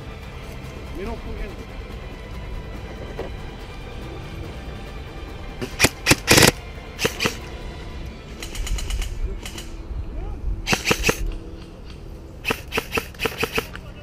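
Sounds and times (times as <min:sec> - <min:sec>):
background music: 0:00.0 - 0:14.0
airsoft guns firing bursts: 0:05.6 - 0:07.4, 0:08.4 - 0:09.7, 0:10.7 - 0:11.3, 0:12.4 - 0:13.8.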